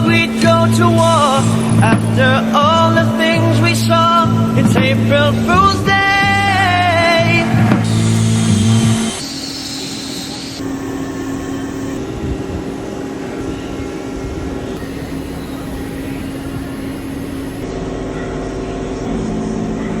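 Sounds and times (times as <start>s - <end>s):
machine whirring and humming: 0.0s - 3.7s, 7.8s - 17.7s.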